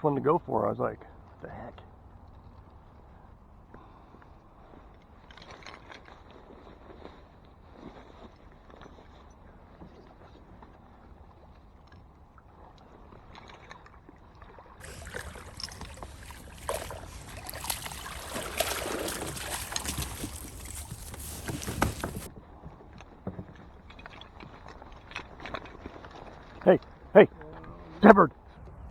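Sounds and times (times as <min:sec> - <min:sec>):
water splashing and sloshing: 0:09.8 - 0:22.3, 0:22.9 - 0:27.0.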